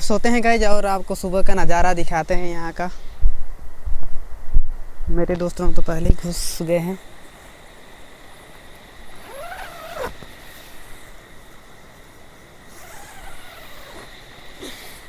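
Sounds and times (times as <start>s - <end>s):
tent zipper being pulled: 9.0s - 11.2s, 12.7s - 15.0s
sharp zipper click: 9.2s - 10.8s, 12.7s - 14.8s.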